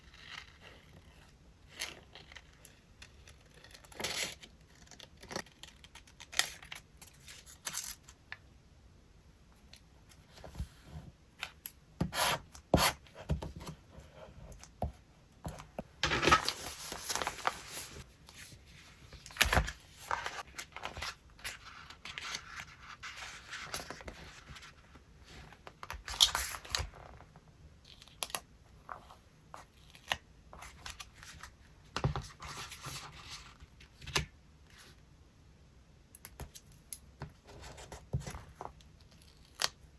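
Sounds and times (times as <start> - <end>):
paper rustling and scraping: 16.0 - 24.8.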